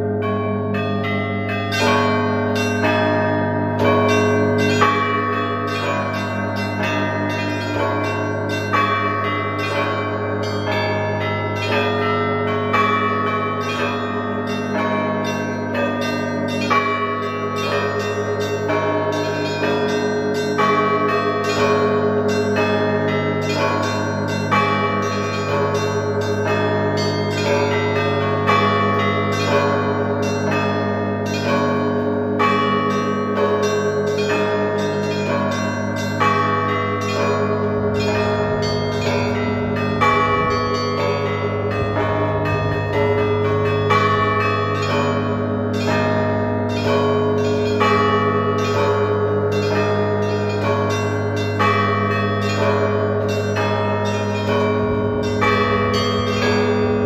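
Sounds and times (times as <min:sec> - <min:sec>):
small bells chiming: 0:00.0 - 0:57.0
large bell hum and strokes: 0:35.6 - 0:45.7, 0:54.3 - 0:57.0.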